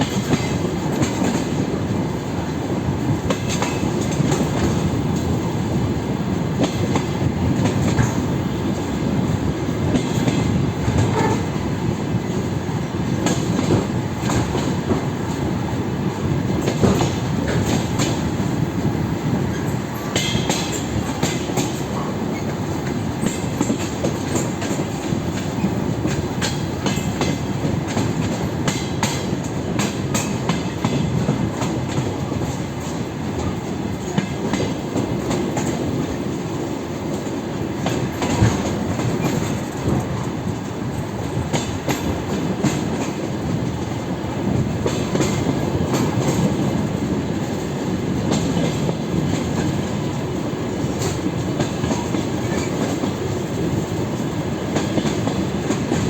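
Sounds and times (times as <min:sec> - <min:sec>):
train wheels rumbling on track: 0:00.0 - 0:56.0
wheels clicking over rail joints: 0:12.2 - 0:18.5, 0:19.4 - 0:56.0.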